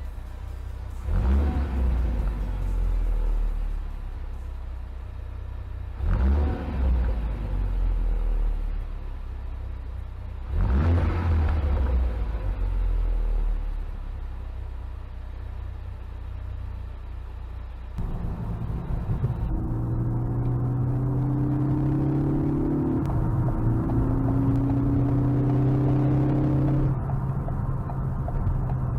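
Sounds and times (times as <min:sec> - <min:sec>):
car engine idling and revving: 0:00.0 - 0:28.9.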